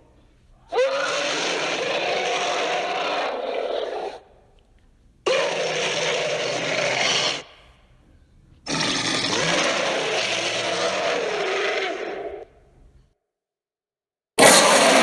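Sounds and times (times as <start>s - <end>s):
monster roars: 8.7s - 12.4s, 14.4s - 15.0s.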